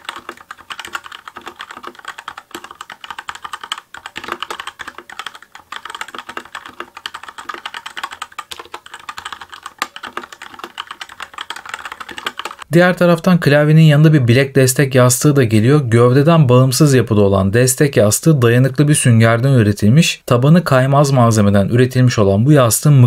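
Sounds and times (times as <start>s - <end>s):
fast typing on keyboard: 0.0s - 12.7s.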